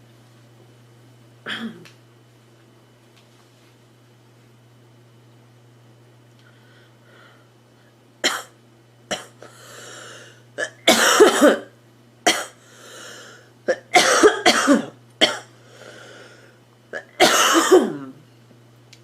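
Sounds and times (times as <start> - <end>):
girl coughing: 1.5 - 1.8, 8.2 - 9.4, 10.6 - 11.7, 12.3 - 12.6, 13.7 - 15.5, 17.0 - 18.2.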